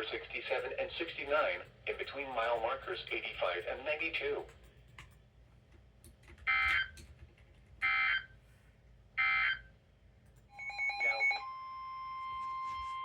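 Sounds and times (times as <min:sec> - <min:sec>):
steady alarm tone: 0:09.2 - 0:09.7, 0:10.5 - 0:13.0.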